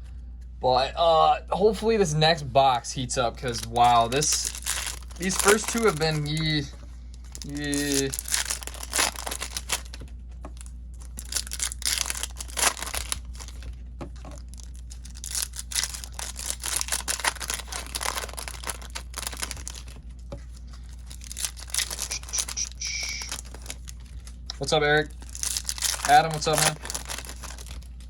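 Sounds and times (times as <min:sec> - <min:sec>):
card pack wrappers tearing: 0:03.2 - 0:10.0, 0:10.6 - 0:13.7, 0:14.3 - 0:28.0
short electronic beep: 0:22.1 - 0:23.3.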